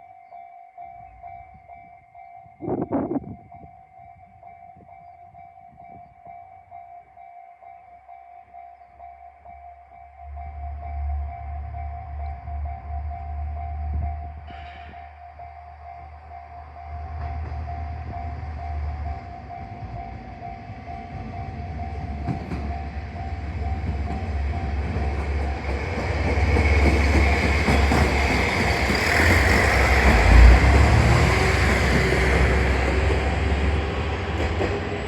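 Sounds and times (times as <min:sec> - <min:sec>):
rail noise: 0:00.8 - 0:35.0
train engine: 0:09.3 - 0:35.0.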